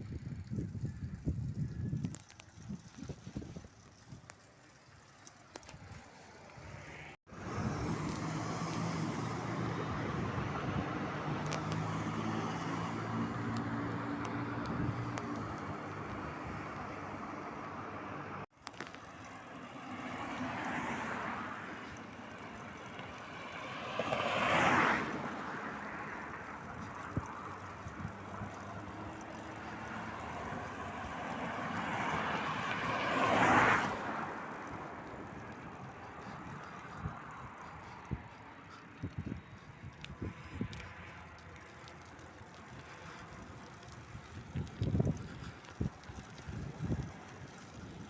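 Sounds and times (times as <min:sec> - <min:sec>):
vehicle running: 0:03.8 - 0:48.0
wind rush: 0:07.3 - 0:11.4, 0:44.1 - 0:48.0.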